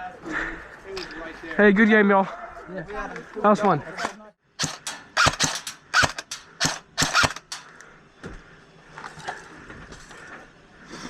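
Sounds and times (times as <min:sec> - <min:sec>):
airsoft guns firing: 0:04.6 - 0:07.7.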